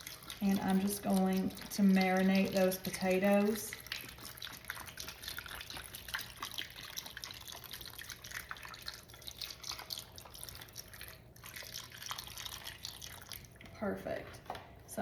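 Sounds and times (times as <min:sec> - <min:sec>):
broth splashing and dripping: 0:00.0 - 0:13.8.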